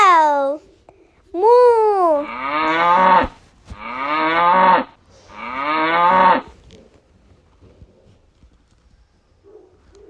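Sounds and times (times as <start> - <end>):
cow mooing: 2.2 - 6.5.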